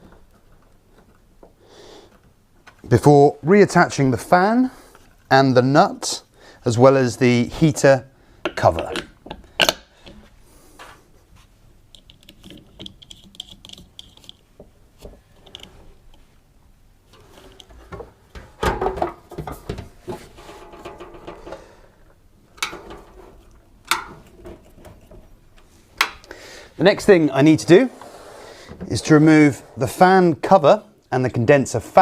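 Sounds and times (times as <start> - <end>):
tools and parts clattering: 17.1 - 21.9, 22.5 - 25.6.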